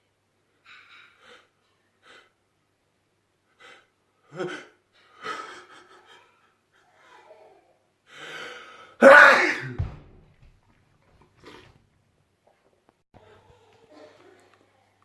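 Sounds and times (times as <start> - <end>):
gasping in-breaths: 8.1 - 9.0
man sneezing: 9.0 - 9.8.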